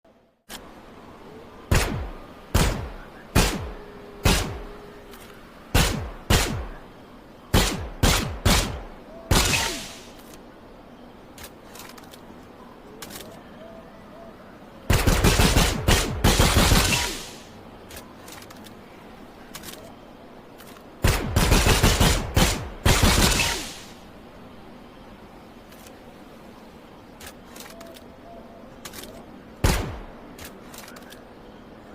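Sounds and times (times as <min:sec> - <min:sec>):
pistol gunshots: 0:01.7 - 0:04.7, 0:05.7 - 0:06.8, 0:07.5 - 0:10.1, 0:14.9 - 0:17.5, 0:21.0 - 0:23.9, 0:29.6 - 0:30.2
rapid gunfire bursts: 0:01.7 - 0:04.7, 0:05.7 - 0:06.8, 0:07.5 - 0:10.1, 0:14.9 - 0:17.5, 0:21.0 - 0:24.0.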